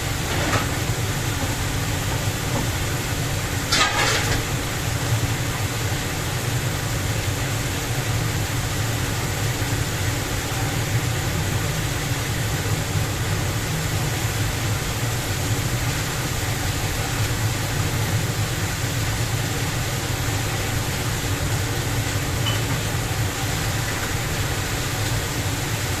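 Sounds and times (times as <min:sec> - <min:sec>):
dishwasher hiss: 0:00.0 - 0:05.9
dishwasher motor hum: 0:00.0 - 0:26.0.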